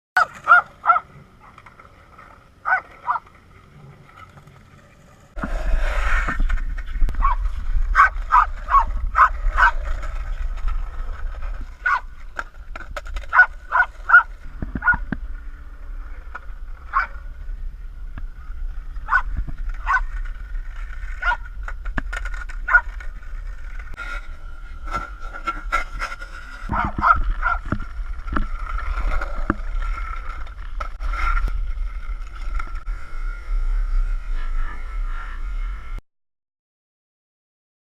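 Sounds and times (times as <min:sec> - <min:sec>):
dog barking and yipping: 0:00.2 - 0:01.1, 0:02.6 - 0:03.2, 0:07.2 - 0:09.8, 0:11.8 - 0:12.1, 0:13.3 - 0:15.0, 0:16.9 - 0:17.1, 0:19.1 - 0:20.1, 0:21.2 - 0:21.4, 0:22.7 - 0:22.9, 0:26.7 - 0:27.6
steady low rumble: 0:05.3 - 0:25.4.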